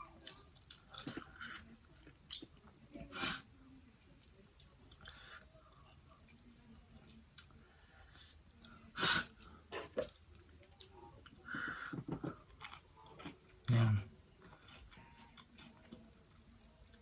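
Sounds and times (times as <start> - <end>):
person chewing noodles: 0.0 - 2.8, 4.6 - 6.4, 12.4 - 17.0.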